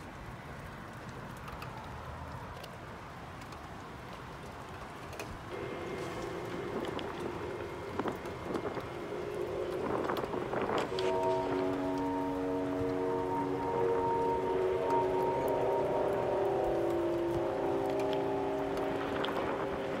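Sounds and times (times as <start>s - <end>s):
outdoor background hiss: 0.0s - 20.0s
droning trumpet-like tone: 5.5s - 20.0s.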